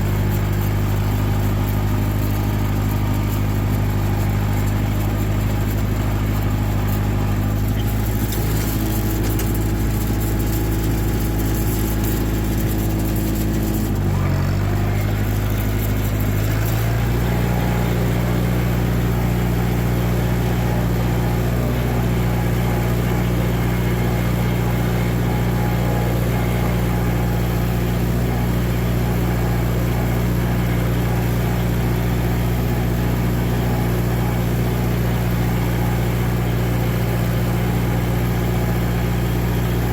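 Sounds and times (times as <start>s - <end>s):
tractor engine running: 0.0s - 39.9s.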